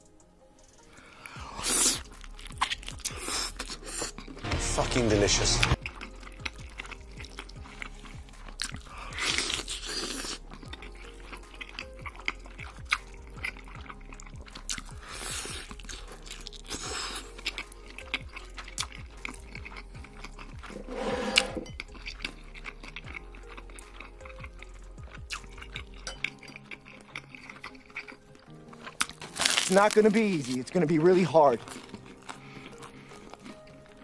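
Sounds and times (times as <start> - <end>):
chewing and crunching food: 0.0 - 34.0
soft background music: 0.0 - 34.0.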